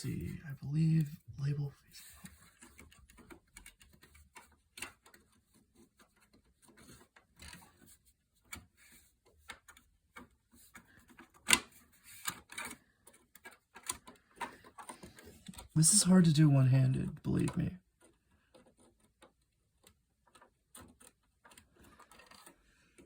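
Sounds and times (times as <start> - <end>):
plastic handling sounds: 0.0 - 16.2, 17.0 - 23.0
memory sticks clicking into slots: 9.4 - 15.8.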